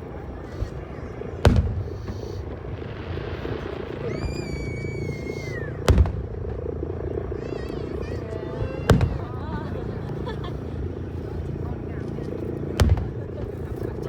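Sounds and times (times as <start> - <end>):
firework whistling: 0.0 - 10.5
firework booms: 0.3 - 11.1, 12.7 - 14.0.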